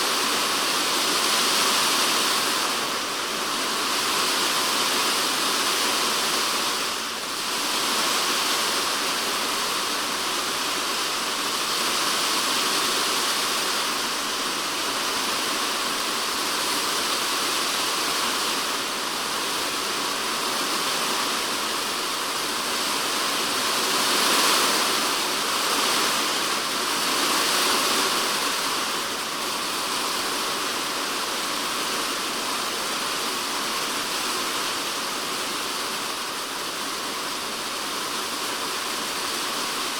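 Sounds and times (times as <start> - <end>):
rain on a plastic roof: 0.0 - 39.9.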